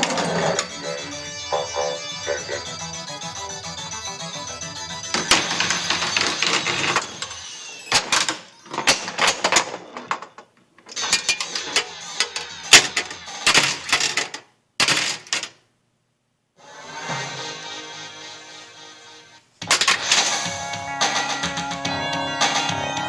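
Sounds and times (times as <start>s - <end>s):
pinball machine clicking and crackling: 5.1s - 15.6s, 19.6s - 20.4s.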